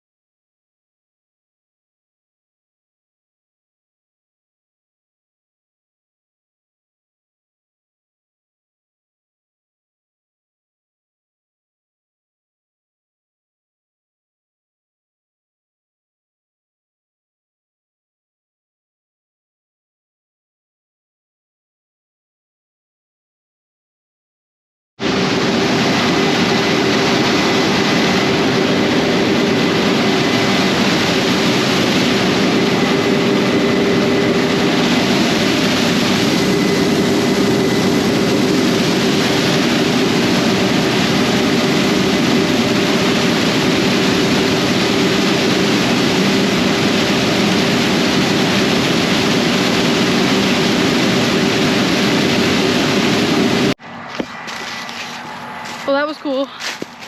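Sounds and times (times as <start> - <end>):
combine harvester running: 25.0 - 57.0.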